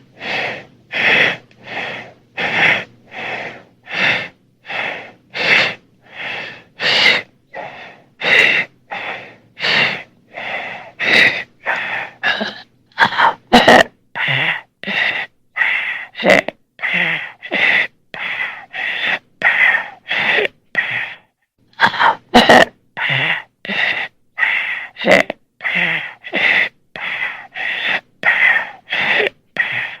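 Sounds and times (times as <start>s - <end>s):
creature rasping breaths: 25.6s - 30.0s.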